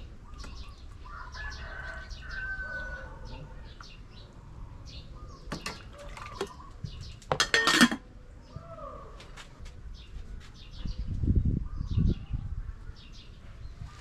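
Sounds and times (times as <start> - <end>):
small birds chirping: 0.0 - 7.3, 9.9 - 14.0
kitchen utensils clattering: 7.3 - 8.0.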